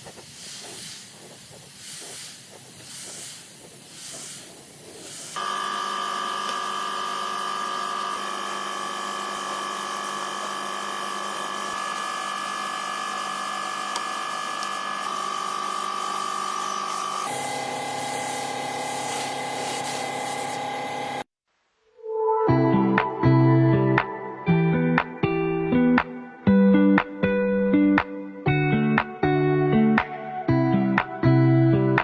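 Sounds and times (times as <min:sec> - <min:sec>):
rhythmic rasping strokes: 0:00.0 - 0:21.2
electric power tool running: 0:05.0 - 0:21.3.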